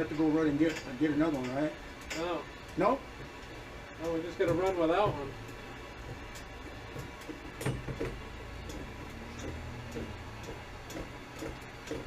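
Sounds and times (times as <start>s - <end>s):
hand tools clicking on metal: 4.0s - 12.0s.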